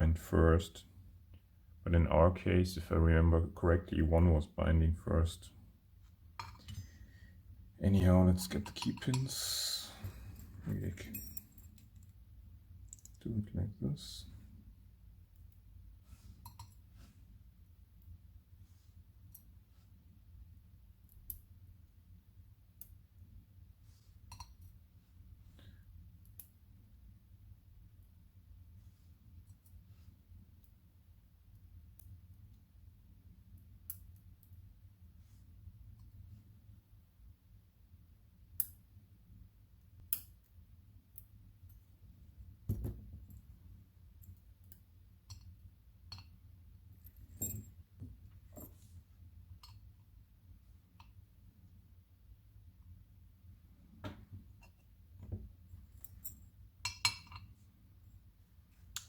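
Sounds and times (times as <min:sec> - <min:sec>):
metallic ringing clink: 0:10.4 - 0:11.8.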